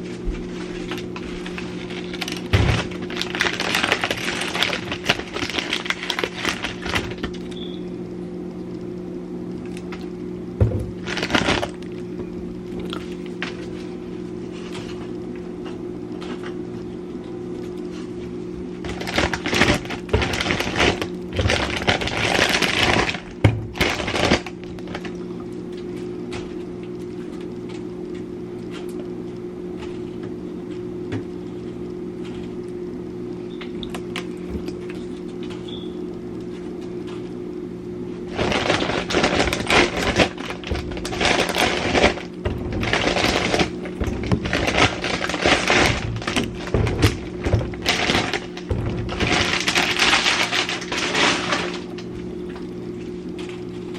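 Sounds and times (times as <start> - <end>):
steady low hum: 0.0 - 53.9
objects clattering and scraping: 38.3 - 52.1.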